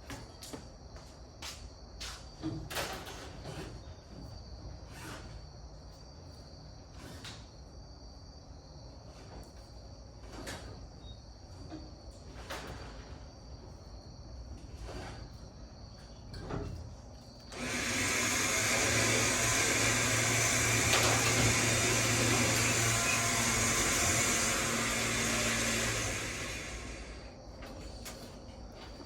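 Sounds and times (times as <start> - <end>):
machine motor hum and hiss: 17.5 - 27.5.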